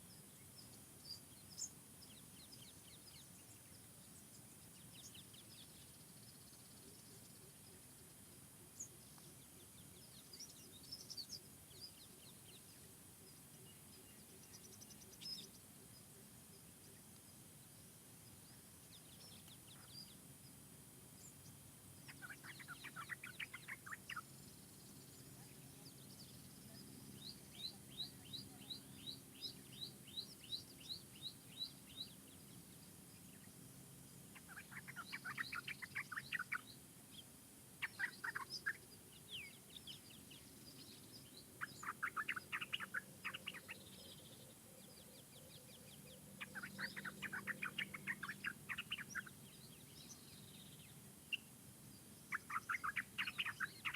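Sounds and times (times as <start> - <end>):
birds trilling chirps: 0.0 - 53.9
faint low hum: 0.0 - 53.9.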